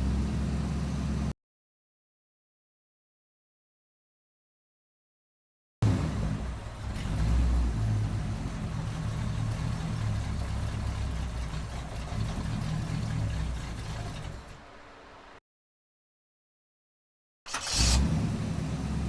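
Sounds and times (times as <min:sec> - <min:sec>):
truck engine running: 0:00.0 - 0:01.3, 0:05.8 - 0:15.4.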